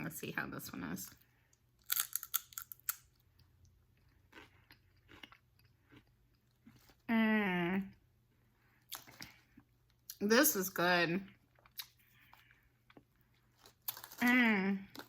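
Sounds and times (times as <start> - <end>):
chips crunching while chewed: 1.8 - 3.4, 4.0 - 7.1, 11.6 - 15.0.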